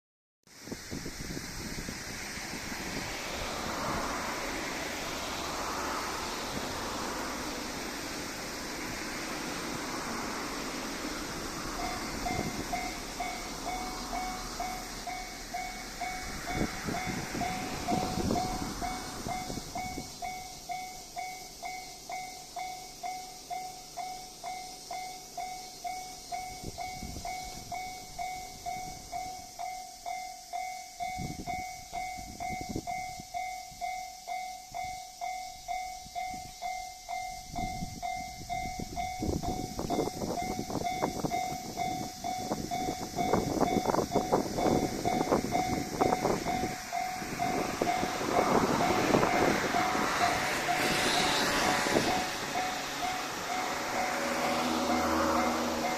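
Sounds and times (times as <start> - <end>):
railcar passing rush: 0.6 - 55.9
train wheels clattering: 42.1 - 55.9.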